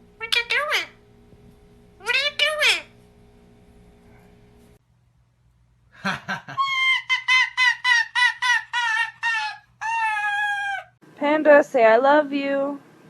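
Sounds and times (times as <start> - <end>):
bird calling and clucking: 6.6 - 11.0.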